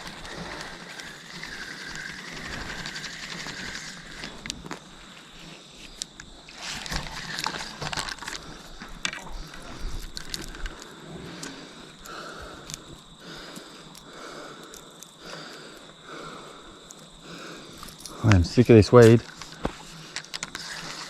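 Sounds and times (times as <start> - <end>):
fishing reel cranking: 0.0 - 4.8, 6.5 - 10.8, 19.0 - 21.0
rustling and clicking handling noise: 0.0 - 15.2, 17.7 - 21.0.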